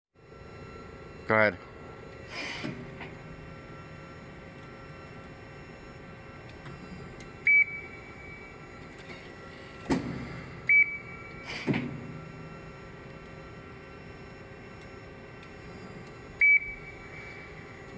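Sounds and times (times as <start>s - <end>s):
press brake humming: 1.8s - 17.9s
machine clunks: 2.3s - 3.4s, 6.5s - 16.9s.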